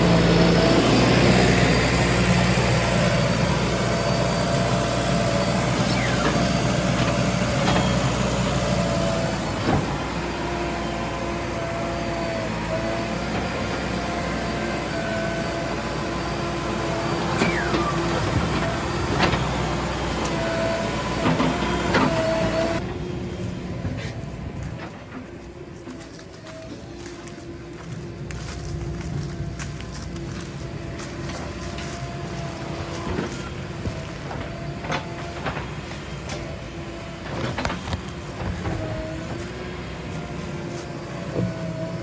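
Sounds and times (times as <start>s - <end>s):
diesel machinery running: 0.0s - 42.0s.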